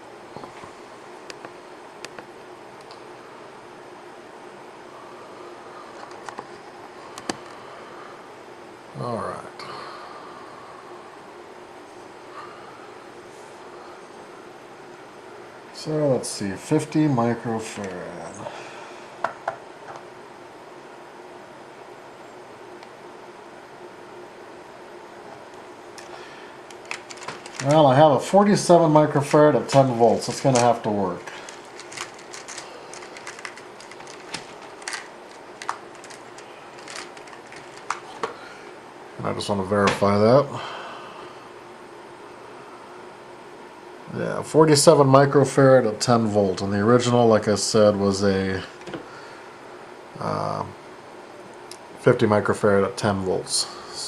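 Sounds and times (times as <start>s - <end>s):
faint hum: 0.0s - 54.0s
electronic parts clicking and tapping: 31.5s - 38.3s
faint steady hiss: 44.0s - 54.0s.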